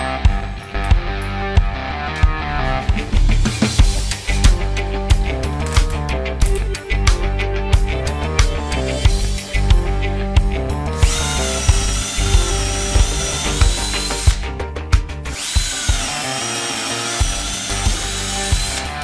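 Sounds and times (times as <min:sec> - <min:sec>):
background music with beat: 0:00.0 - 0:19.0
cordless drill motor whining: 0:11.0 - 0:14.4, 0:15.3 - 0:19.0.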